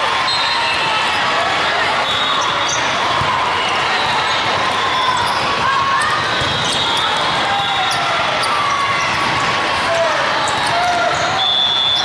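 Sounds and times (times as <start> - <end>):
busy hall din: 0.0 - 12.0
murmur of voices: 0.0 - 12.0
volleyballs hit and bouncing: 2.4 - 11.4.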